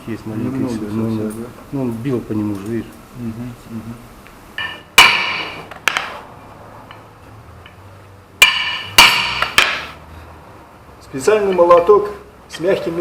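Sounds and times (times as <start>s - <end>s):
hammer striking metal gear: 4.6s - 6.1s, 8.4s - 10.0s.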